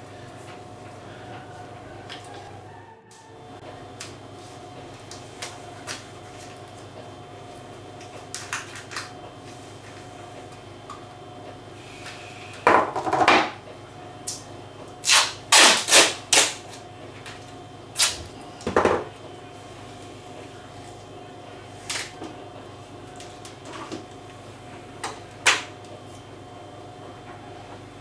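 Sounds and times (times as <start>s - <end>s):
workshop hum: 0.0s - 28.0s
wood knocking on workbench: 12.7s - 13.6s, 18.6s - 19.1s.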